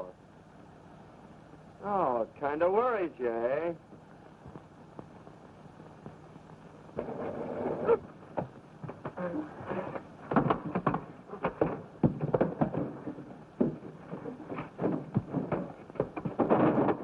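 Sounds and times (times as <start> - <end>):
irregular thumps and crashes: 10.3 - 17.0.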